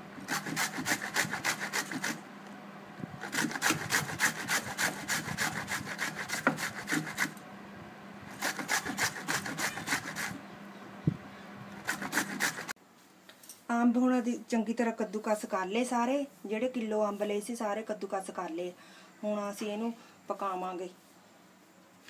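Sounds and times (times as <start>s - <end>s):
mango rasping on hand grater: 0.2s - 2.2s, 3.2s - 7.4s, 8.3s - 10.4s, 11.8s - 12.8s.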